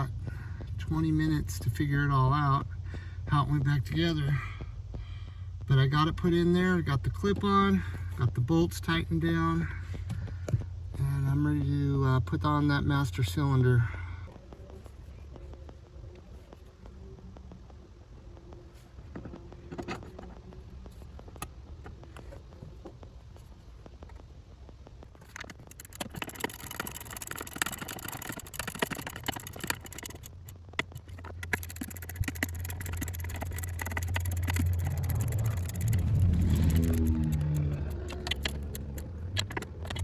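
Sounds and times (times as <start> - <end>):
low hum: 0.0 - 40.0
tools and metal parts clicking: 25.2 - 40.0.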